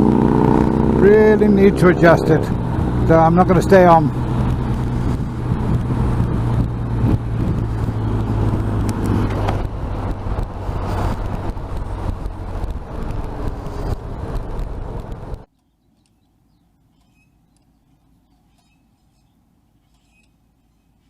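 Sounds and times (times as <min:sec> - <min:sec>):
motorcycle engine running: 0:00.0 - 0:15.5
wind and road noise: 0:00.0 - 0:21.0.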